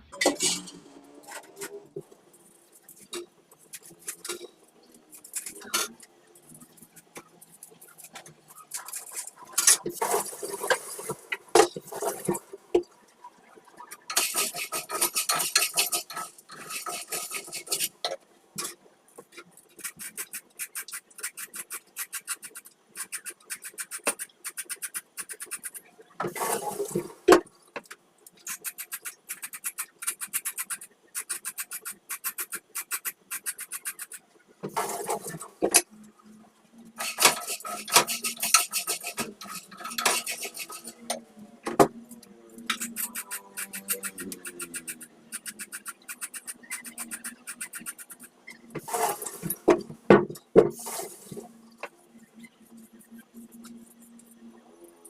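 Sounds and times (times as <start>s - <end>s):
metal spoon scraping a pot: 37.0s - 41.0s.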